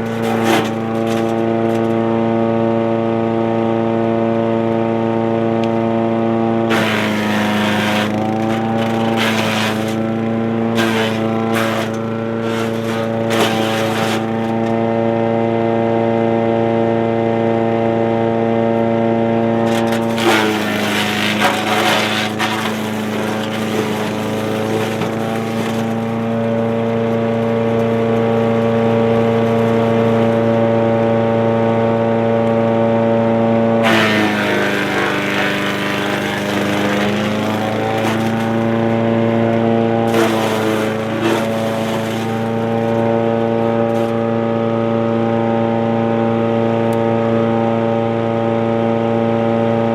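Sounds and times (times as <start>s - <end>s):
branches shredded with crunching: 0.0s - 2.0s, 6.6s - 15.0s, 19.5s - 31.4s, 33.8s - 44.5s
wood chipper engine running: 0.0s - 49.9s.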